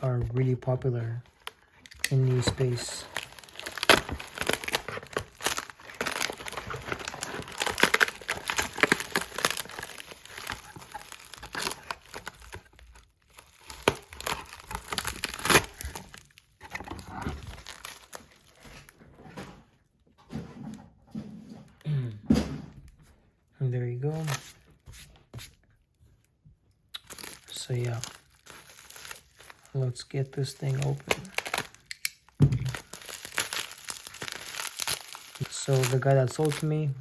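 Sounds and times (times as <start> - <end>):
packaging crinkling and tearing: 0.0 - 19.0, 27.0 - 37.0.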